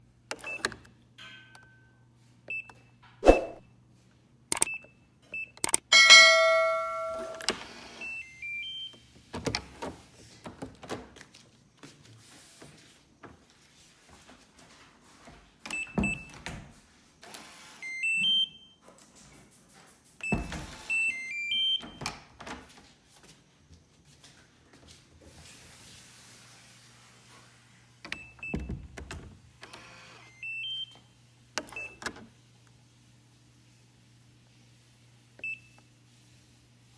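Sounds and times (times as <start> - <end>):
ringing chime: 5.9 - 7.5.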